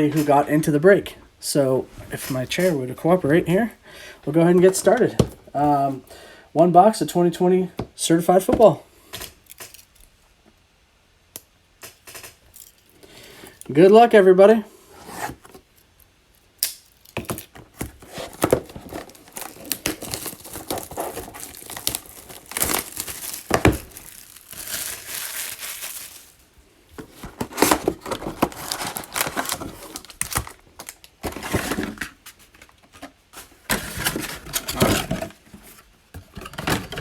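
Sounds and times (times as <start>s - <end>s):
plastic shrink wrap crinkling and tearing: 18.1s - 32.0s.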